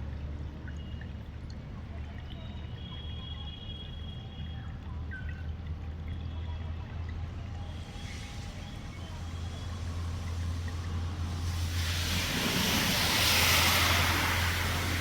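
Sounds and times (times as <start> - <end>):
low engine hum: 5.5 - 15.0
tyres hissing through water: 7.2 - 15.0.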